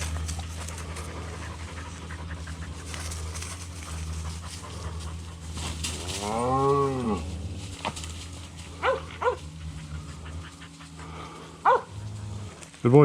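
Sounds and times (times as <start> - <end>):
dog panting: 0.0 - 6.1, 7.6 - 12.8
low hum: 0.0 - 13.0
cow mooing: 2.6 - 12.8.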